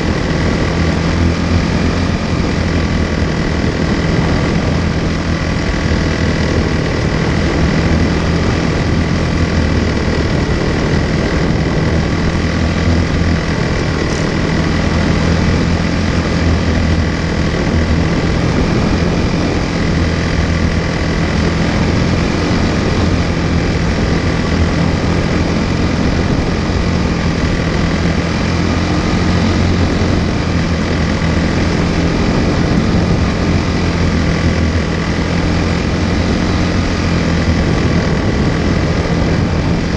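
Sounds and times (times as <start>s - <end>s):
small engine running steadily: 0.0s - 39.9s.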